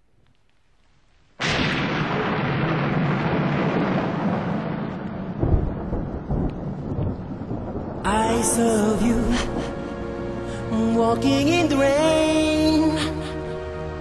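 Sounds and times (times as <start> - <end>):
low rumble of thunder: 1.4 - 10.0
thunder clap rolling: 1.4 - 10.0
heavy rain: 1.4 - 14.0.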